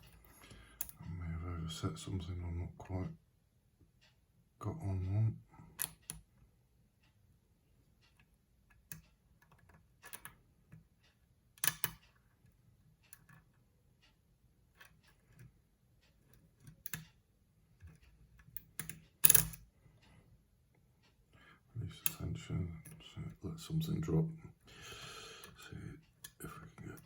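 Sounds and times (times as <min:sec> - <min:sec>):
lock pick metal clicks: 0:11.6 - 0:12.0, 0:17.8 - 0:19.6.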